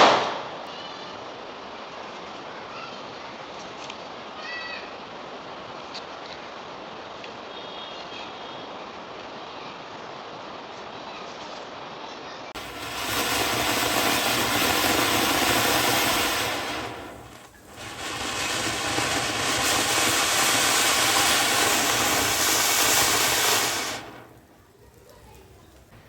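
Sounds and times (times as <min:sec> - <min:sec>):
fireworks hissing: 0:12.6 - 0:26.0.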